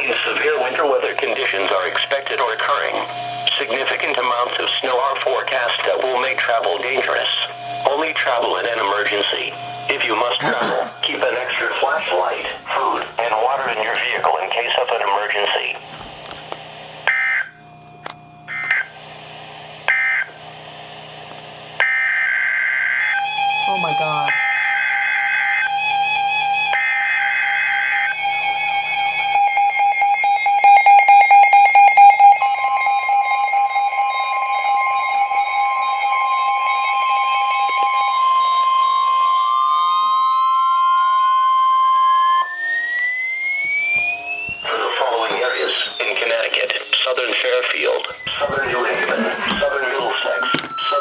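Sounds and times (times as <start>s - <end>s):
lower alarm tone: 0.0s - 15.9s, 16.7s - 51.0s
steady high alarm tone: 0.0s - 51.0s
pulsing higher tone: 30.6s - 47.0s, 47.7s - 51.0s
tone rising in pitch: 31.8s - 46.7s, 47.7s - 51.0s
harsh buzzing data bursts: 42.4s - 51.0s.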